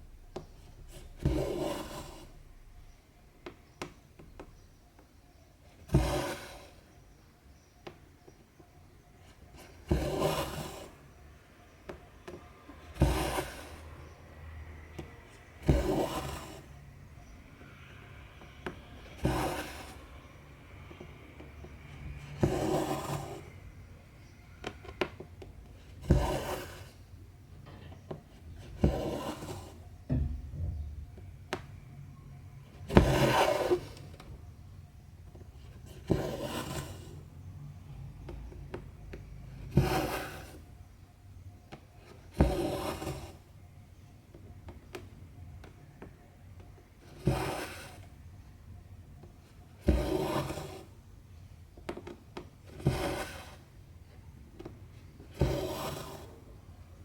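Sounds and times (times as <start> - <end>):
thread rasping through fabric: 39.6 - 40.6.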